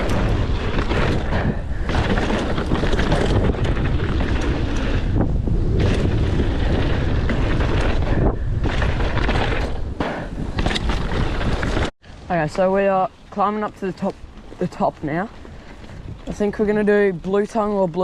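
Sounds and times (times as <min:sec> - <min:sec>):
bike rattling and knocking: 0:00.0 - 0:11.9
wind buffeting microphone: 0:00.0 - 0:11.9, 0:13.4 - 0:18.0.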